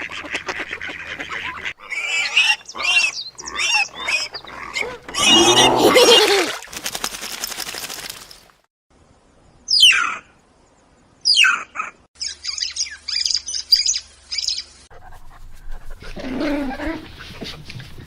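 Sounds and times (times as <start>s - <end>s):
bird calls sweeping downward: 9.7s - 10.4s.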